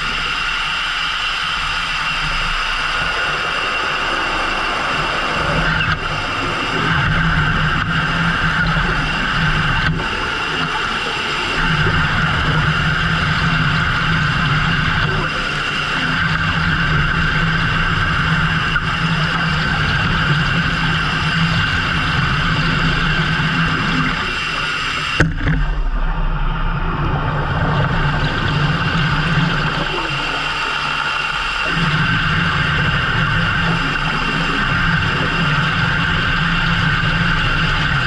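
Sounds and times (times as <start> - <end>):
boat engine humming: 0.0 - 38.0.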